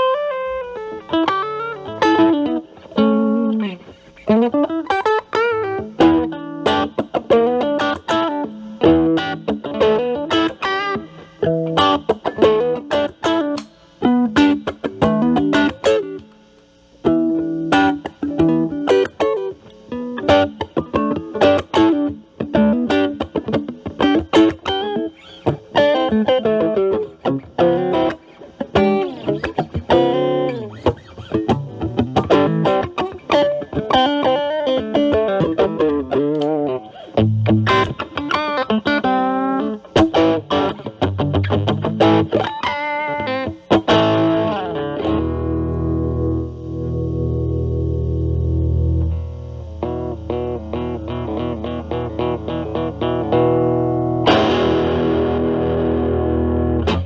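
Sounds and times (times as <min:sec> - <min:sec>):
distorted electric guitar notes: 0:00.0 - 0:16.4, 0:17.0 - 0:57.0.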